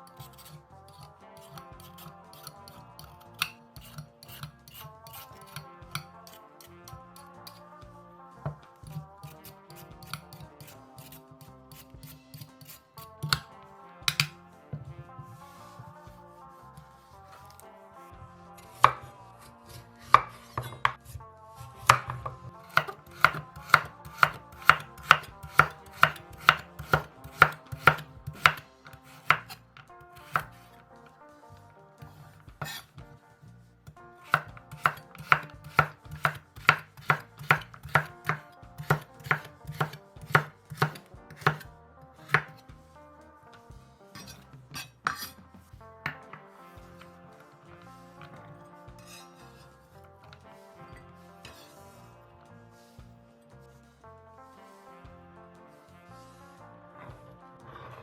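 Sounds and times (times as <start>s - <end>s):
soft background music: 0.0s - 58.0s
knife chopping on cutting board: 10.0s - 13.5s, 14.1s - 14.3s, 21.8s - 29.6s, 30.2s - 30.6s, 32.6s - 32.9s, 34.3s - 42.6s.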